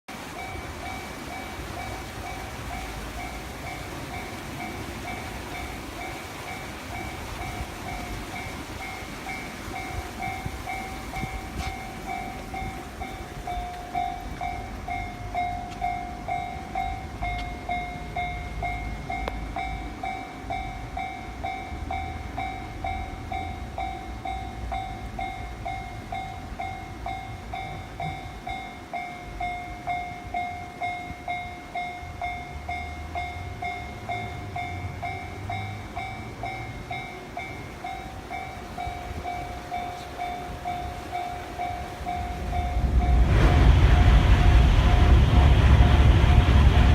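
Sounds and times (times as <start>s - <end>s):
train rumbling past: 0.1s - 46.9s
level crossing bell ringing: 0.4s - 43.4s.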